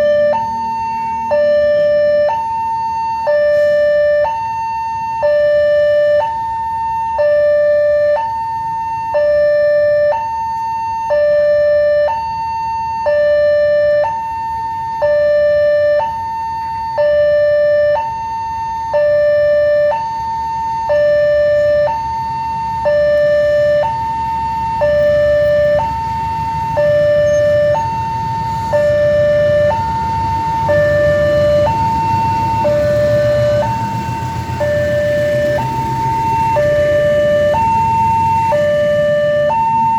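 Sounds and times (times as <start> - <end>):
level crossing two-tone alarm: 0.0 - 39.9.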